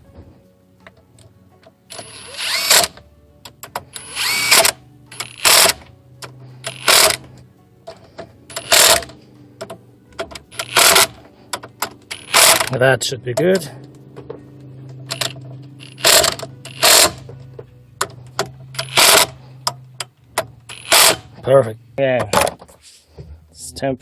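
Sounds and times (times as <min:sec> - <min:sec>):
power driver driving bolts: 0:01.9 - 0:12.8, 0:13.4 - 0:21.6.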